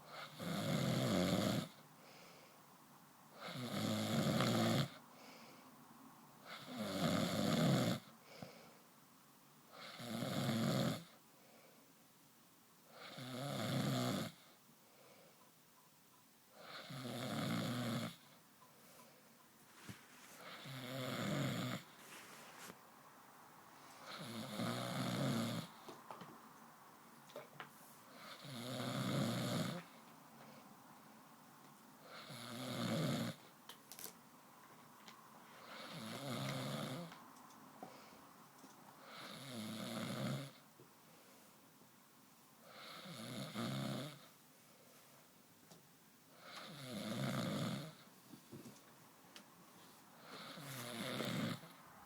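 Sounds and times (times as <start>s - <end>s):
loud snoring: 0.1s - 1.8s, 3.4s - 5.0s, 6.5s - 8.1s, 9.8s - 11.2s, 13.0s - 14.5s, 16.6s - 18.3s, 20.4s - 22.0s, 24.1s - 25.8s, 28.2s - 29.9s, 32.0s - 33.4s, 35.6s - 37.1s, 39.0s - 40.6s, 42.7s - 44.3s, 46.4s - 48.0s, 50.3s - 51.8s
quiet breathing: 1.6s - 3.7s, 4.3s - 6.8s, 8.0s - 10.1s, 11.0s - 12.2s, 14.3s - 31.3s, 34.8s - 41.9s, 42.6s - 45.5s, 49.6s - 52.0s.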